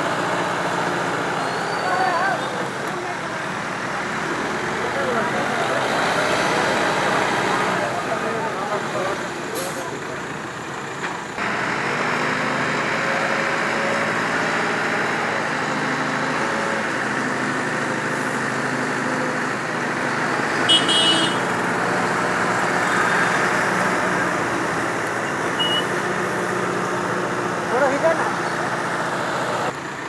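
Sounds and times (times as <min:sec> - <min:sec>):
road traffic noise: 0:00.0 - 0:30.0
vehicle engine running: 0:00.0 - 0:30.0
high-pitched horn toot: 0:20.7 - 0:21.5.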